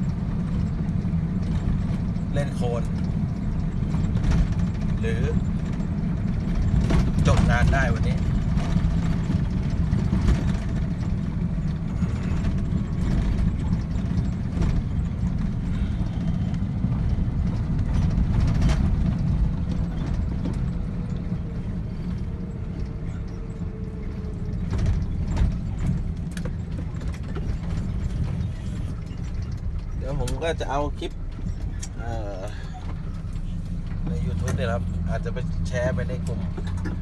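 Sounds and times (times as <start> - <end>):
rattles and clanks from truck body: 0.0 - 37.0
truck engine rumble: 0.0 - 37.0.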